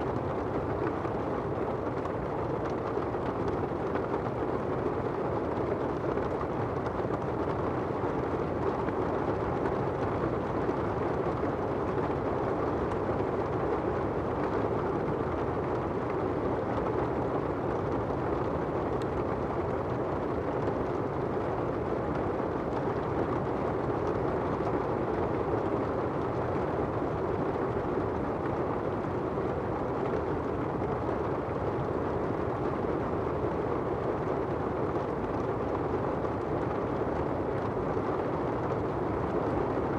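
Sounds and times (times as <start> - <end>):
rain on asphalt: 0.1 - 9.0
rain on an umbrella: 0.1 - 39.9.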